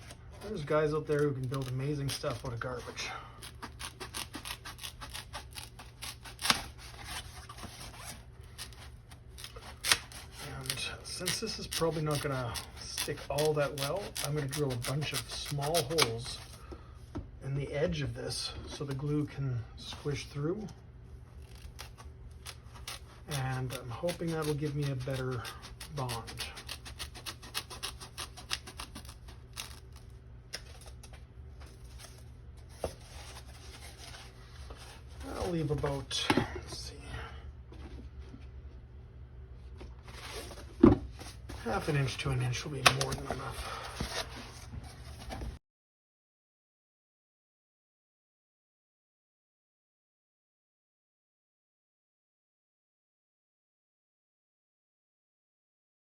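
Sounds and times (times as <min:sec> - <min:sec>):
low steady hum: 0:00.0 - 0:45.6
foam being cut by hand: 0:03.4 - 0:16.4, 0:21.4 - 0:30.1.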